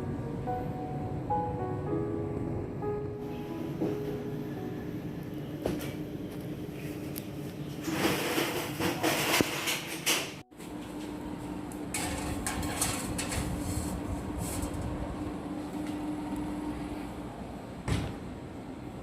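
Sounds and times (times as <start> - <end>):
dishes and utensils clattering: 7.8 - 10.4
steady low hum: 10.6 - 19.0.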